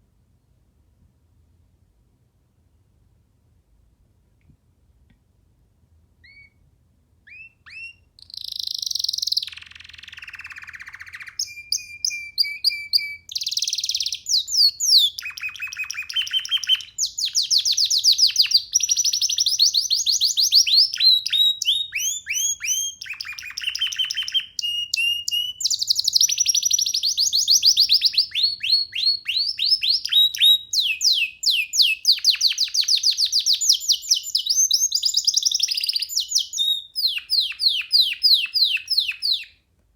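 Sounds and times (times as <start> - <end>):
canary singing trills: 6.2 - 6.6, 7.2 - 39.6.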